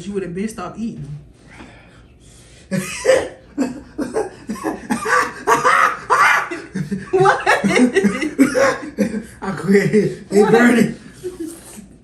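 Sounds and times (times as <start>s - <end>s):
person coughing: 2.7s - 6.9s, 7.8s - 11.8s
person laughing: 2.7s - 11.9s.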